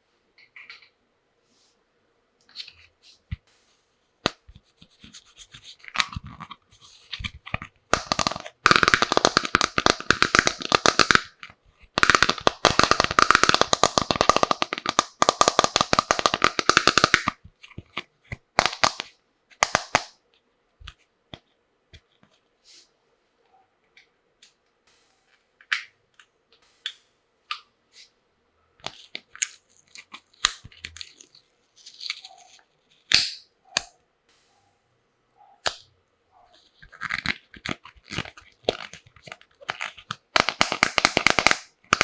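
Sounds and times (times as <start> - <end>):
plastic toy pieces clicking: 8.0 - 17.8, 36.8 - 42.0.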